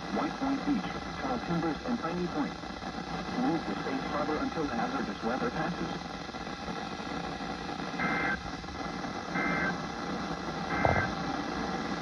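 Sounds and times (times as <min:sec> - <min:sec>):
radio hiss: 0:00.0 - 0:12.0
two-tone digital data bursts: 0:10.7 - 0:11.2.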